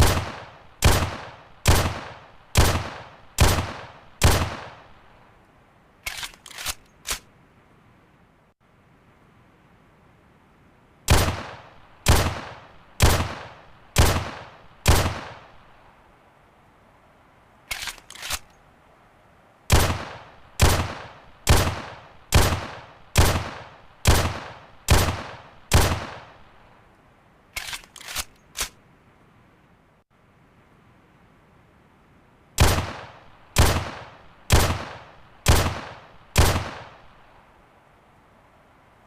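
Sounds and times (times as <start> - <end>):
pistol shots: 0.0 - 5.0, 11.1 - 15.6, 19.7 - 26.4, 32.6 - 37.1
quiet gun clicks: 0.0 - 7.3, 17.6 - 18.6, 19.7 - 28.8.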